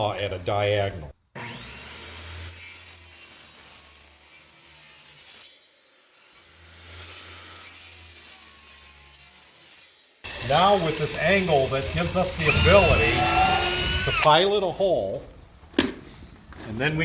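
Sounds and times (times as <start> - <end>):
saw cutting wood: 1.4 - 14.5.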